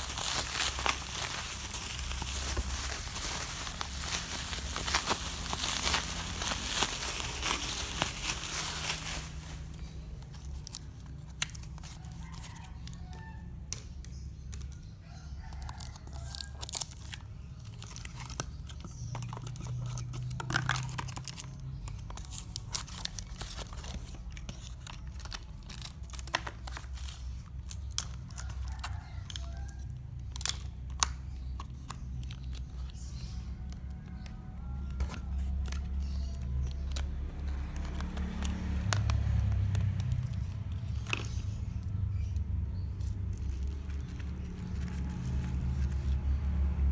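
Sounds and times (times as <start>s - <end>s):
tape and packaging tearing: 0.0s - 12.6s, 35.0s - 46.4s
plastic crinkling: 0.0s - 13.1s, 15.4s - 46.9s.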